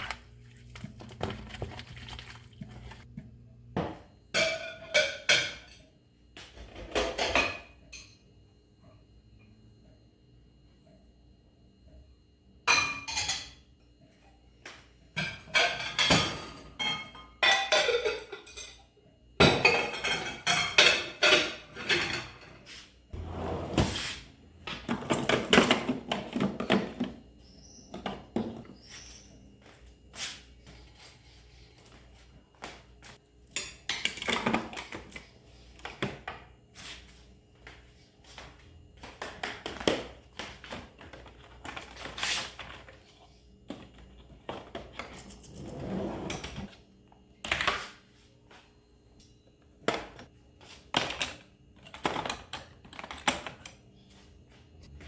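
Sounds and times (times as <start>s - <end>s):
dishes and utensils clattering: 4.3s - 8.2s, 12.6s - 13.7s, 15.1s - 27.2s, 33.5s - 36.5s.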